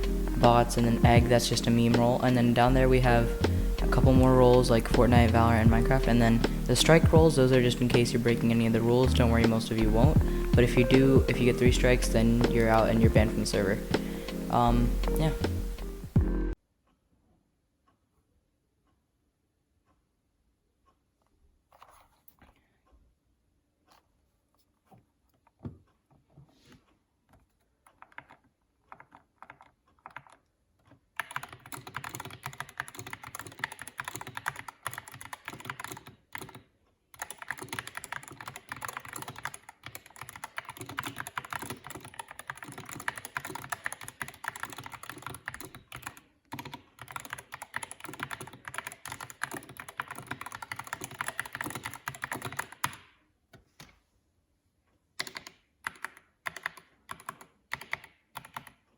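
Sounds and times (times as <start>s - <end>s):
typing on mechanical keyboard: 27.9s - 53.1s, 55.2s - 58.9s.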